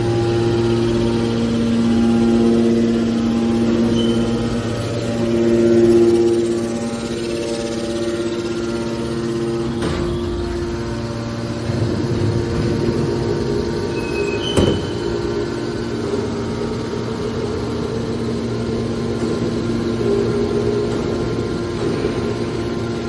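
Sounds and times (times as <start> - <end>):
hydraulic baler motor humming: 0.0 - 23.0
short high squeal: 3.9 - 4.5, 13.9 - 15.1.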